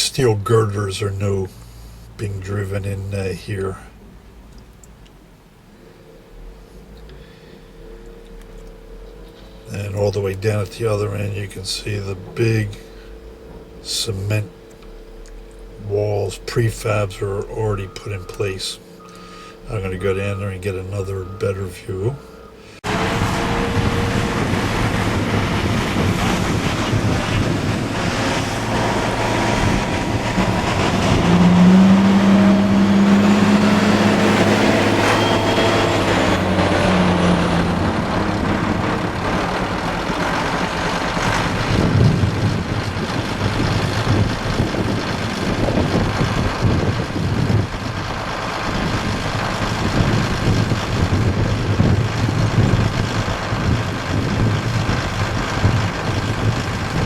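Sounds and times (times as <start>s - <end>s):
loud droning tone: 0.0s - 4.4s, 5.2s - 57.0s
vehicle engine running: 0.0s - 57.0s
wind noise: 22.8s - 57.0s.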